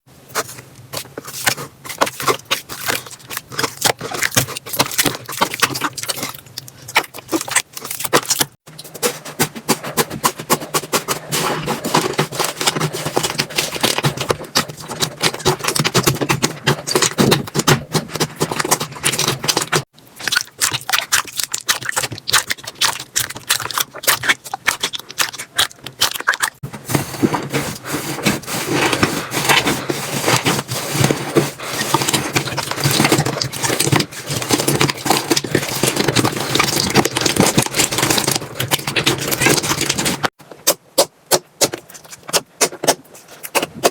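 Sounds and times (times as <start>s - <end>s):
slime squeezed wet crackling: 12.0s - 26.6s.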